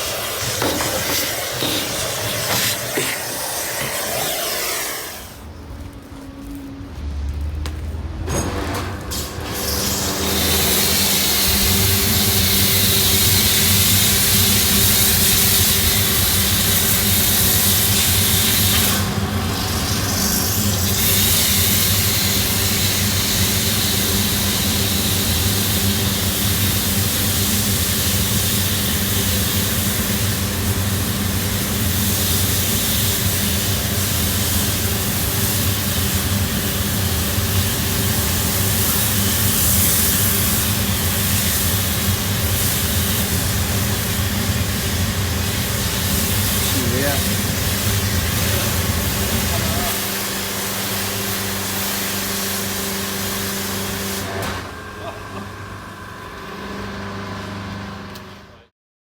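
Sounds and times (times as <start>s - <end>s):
cleaning machine running: 0.0s - 6.6s, 8.1s - 58.3s.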